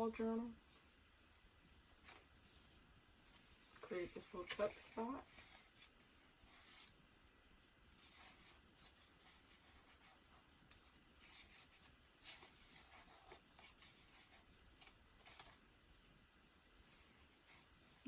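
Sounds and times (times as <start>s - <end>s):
paper pages rustling: 2.0s - 2.3s, 3.2s - 7.0s, 8.0s - 15.6s.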